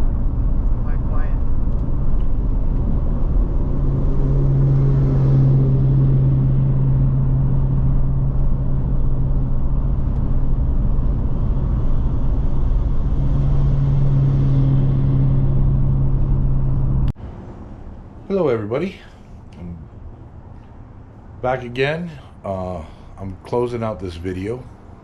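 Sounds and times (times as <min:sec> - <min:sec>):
low hum: 0:00.0 - 0:23.4
car road and engine rumble: 0:00.0 - 0:25.0.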